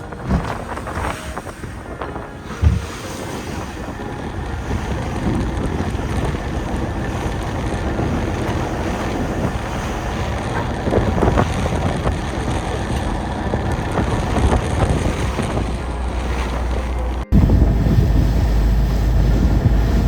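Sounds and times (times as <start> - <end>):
water rushing: 0.0 - 20.0
wind buffeting microphone: 0.0 - 20.0
loud bumps: 17.3 - 20.0.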